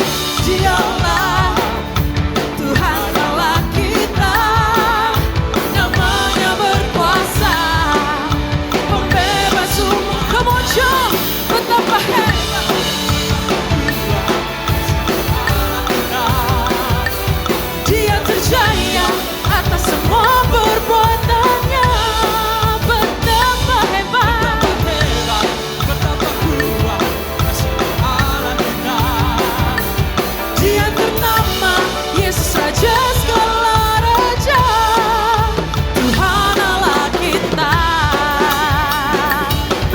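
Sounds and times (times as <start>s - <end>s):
drum kit playing: 0.0s - 39.9s
person singing: 0.0s - 39.9s
metronome click track: 10.3s - 24.0s, 24.6s - 33.5s.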